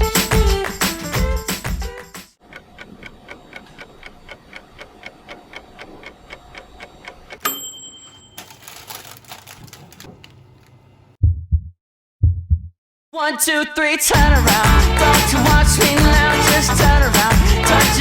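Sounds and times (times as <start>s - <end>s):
rapid clock-like ticking: 2.4s - 7.4s.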